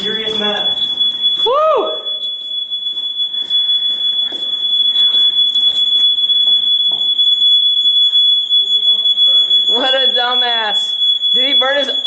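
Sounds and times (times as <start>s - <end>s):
smoke alarm tone: 0.0s - 12.0s.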